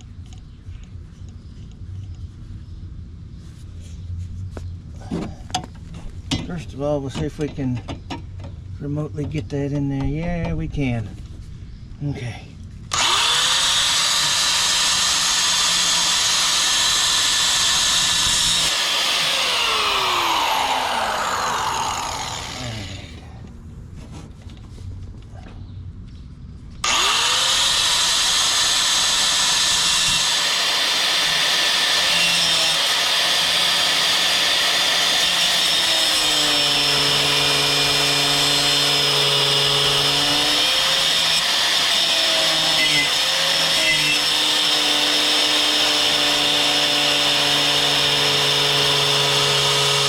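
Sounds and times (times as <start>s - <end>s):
angle grinder cutting steel: 12.9s - 23.3s, 26.8s - 50.0s.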